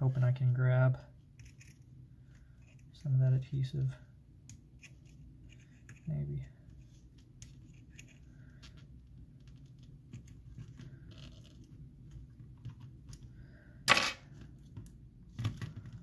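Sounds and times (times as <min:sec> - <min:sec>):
metal tweezers clicking and scratching: 0:01.4 - 0:01.8.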